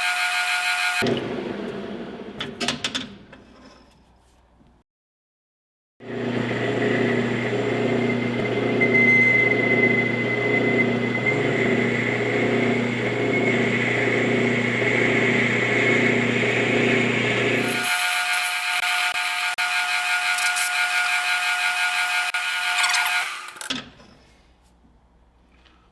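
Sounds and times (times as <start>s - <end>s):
high whine from cutting: 0.0s - 1.0s, 7.1s - 23.7s
metal lathe humming: 0.0s - 1.0s, 9.5s - 23.7s.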